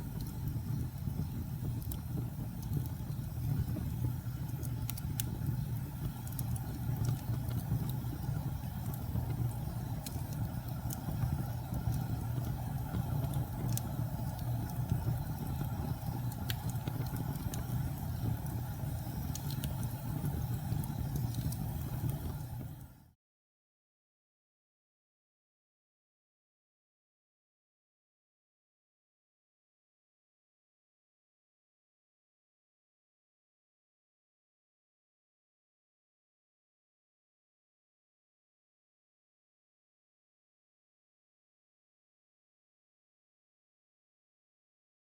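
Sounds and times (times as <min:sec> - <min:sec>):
burning wood crackling and popping: 0:00.0 - 0:23.0
low rumble of flame: 0:00.0 - 0:23.1.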